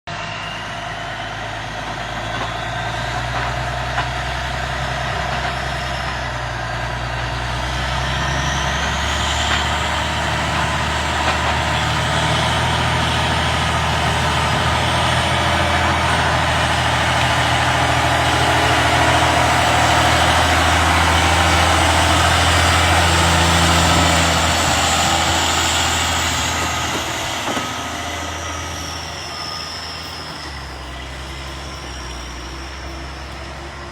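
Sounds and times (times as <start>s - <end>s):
diesel truck engine under load: 0.1s - 33.9s
high whine: 5.1s - 33.9s.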